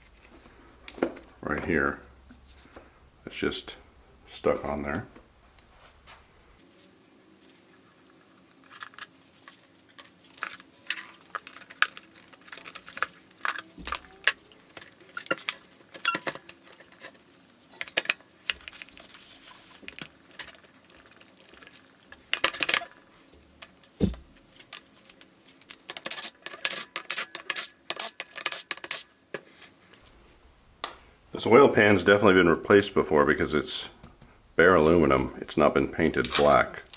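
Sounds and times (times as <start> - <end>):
metal tools clinking and knocking: 36.2 - 36.9.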